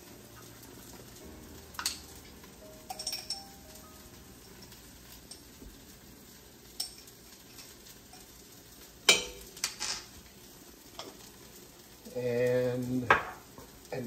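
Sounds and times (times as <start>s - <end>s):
pan sizzling: 0.0s - 14.0s
utensil clinking against cookware: 2.8s - 3.6s, 6.7s - 8.3s, 9.1s - 10.1s.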